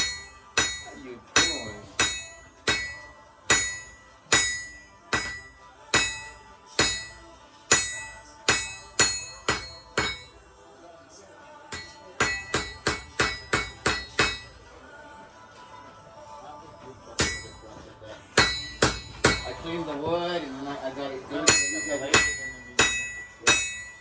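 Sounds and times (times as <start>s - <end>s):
hammer striking steel on anvil: 0.0s - 10.4s, 11.7s - 14.7s, 17.2s - 20.1s, 21.2s - 24.0s.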